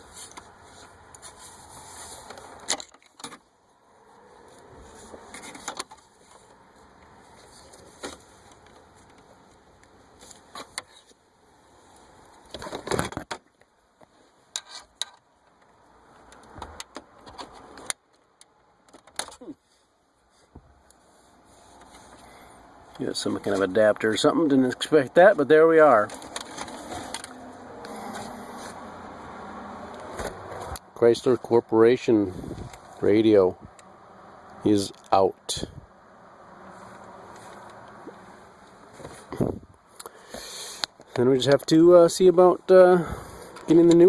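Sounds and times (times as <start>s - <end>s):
rustling: 0.0s - 15.0s, 25.9s - 30.8s.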